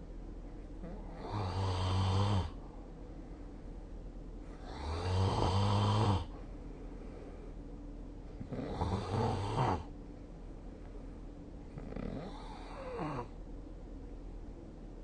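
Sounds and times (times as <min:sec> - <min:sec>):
person snoring: 0:00.8 - 0:02.6, 0:04.6 - 0:06.3, 0:08.4 - 0:09.9.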